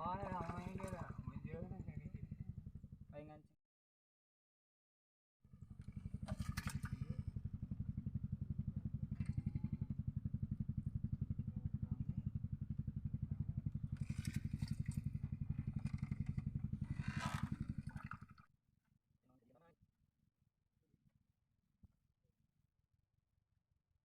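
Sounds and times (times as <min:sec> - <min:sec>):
small engine running: 0:00.0 - 0:03.3, 0:05.5 - 0:18.4.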